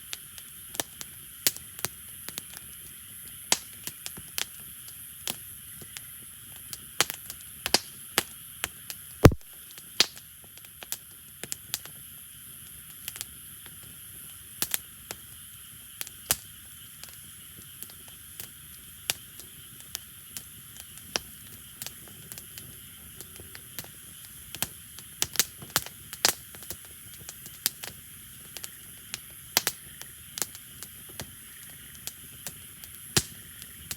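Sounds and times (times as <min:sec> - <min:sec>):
wood fire crackling: 0:09.2 - 0:09.5, 0:19.1 - 0:33.9.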